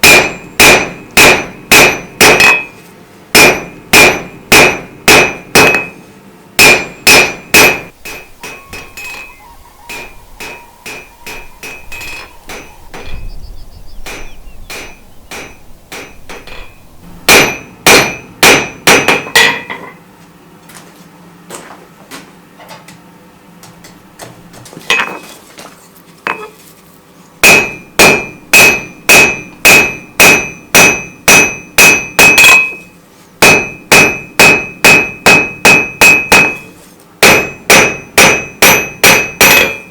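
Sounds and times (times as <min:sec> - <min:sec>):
hammer striking steel on anvil: 0:00.0 - 0:06.0, 0:06.6 - 0:13.3, 0:14.0 - 0:20.0, 0:27.4 - 0:39.9.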